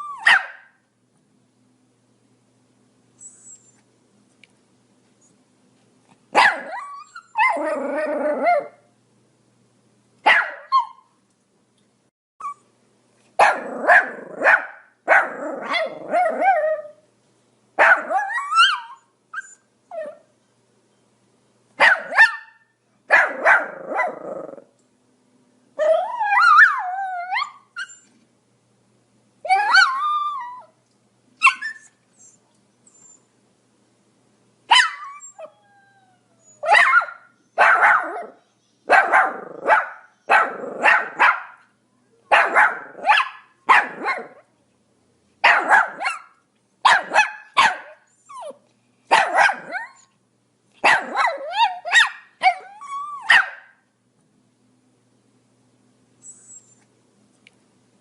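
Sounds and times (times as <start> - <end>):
dog whining yelps: 0.0 - 0.7, 3.2 - 3.8, 6.4 - 8.8, 10.3 - 11.1, 12.4 - 12.7, 13.4 - 17.0, 17.8 - 20.3, 21.8 - 24.6, 25.8 - 28.2, 29.5 - 30.8, 31.4 - 33.2, 34.7 - 41.6, 42.3 - 44.4, 45.4 - 46.3, 46.9 - 50.1, 50.8 - 53.8, 56.2 - 56.8
dog barking: 0.2 - 0.8, 6.3 - 6.8, 10.2 - 11.0, 13.4 - 16.4, 17.8 - 18.9, 21.8 - 24.2, 34.7 - 35.0, 36.7 - 41.7, 42.3 - 44.4, 45.4 - 48.0, 49.1 - 50.0, 50.8 - 52.6, 53.2 - 53.8.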